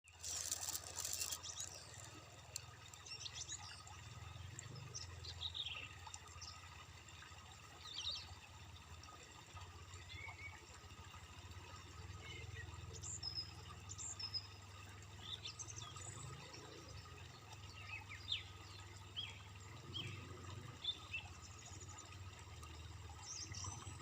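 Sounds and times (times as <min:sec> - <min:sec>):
small stream trickling: 0:00.0 - 0:24.0
birds chirping: 0:00.1 - 0:06.6.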